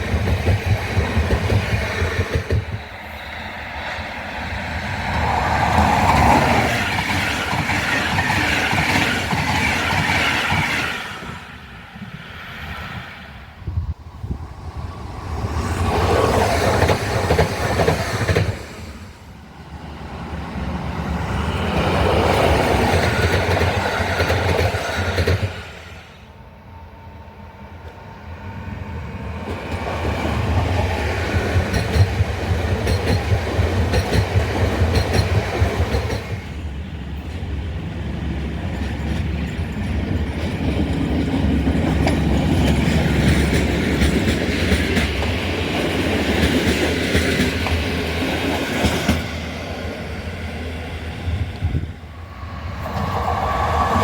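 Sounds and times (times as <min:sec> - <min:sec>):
train wheels clattering over rails: 0:00.0 - 0:11.5, 0:15.3 - 0:19.1, 0:21.3 - 0:26.0, 0:29.3 - 0:36.6, 0:38.3 - 0:50.1.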